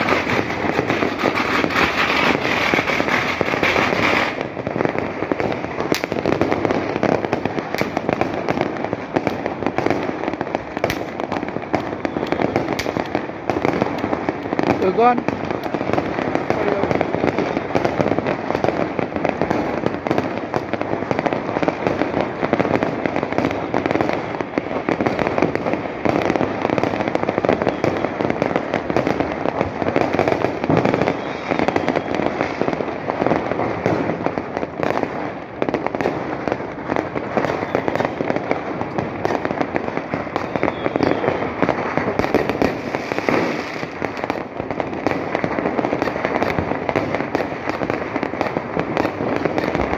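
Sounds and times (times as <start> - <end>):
fireworks and firecrackers popping: 0.0 - 49.9.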